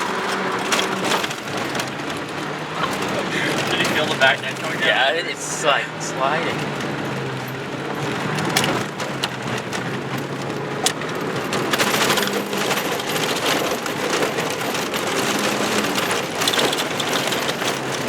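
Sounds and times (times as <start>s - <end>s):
car body rattling: 0.0s - 18.0s
car engine running: 0.0s - 18.0s
gravel crackling against tyres: 0.0s - 18.0s.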